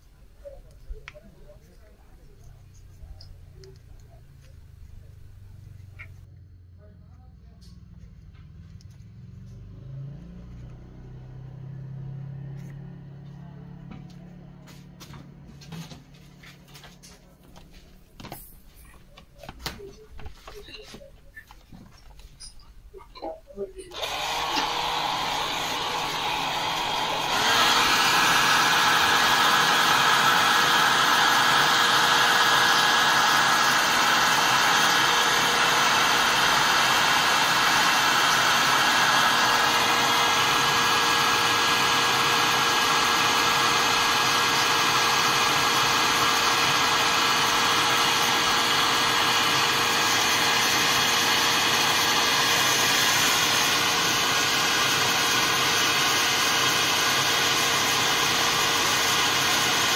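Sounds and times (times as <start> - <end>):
hair dryer blowing air: 23.9 - 59.9
hair dryer motor whine: 23.9 - 59.9.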